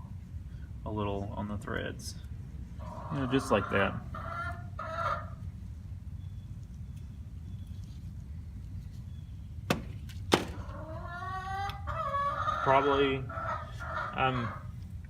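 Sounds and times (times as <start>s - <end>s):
low steady hum: 0.0s - 15.0s
chicken clucking: 2.8s - 5.5s, 10.6s - 14.8s.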